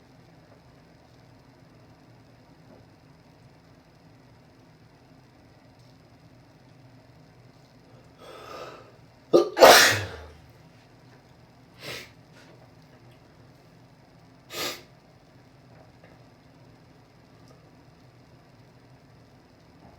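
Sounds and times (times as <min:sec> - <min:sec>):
person breathing in: 0:08.2 - 0:08.9
person sneezing: 0:09.4 - 0:10.3, 0:14.5 - 0:14.9.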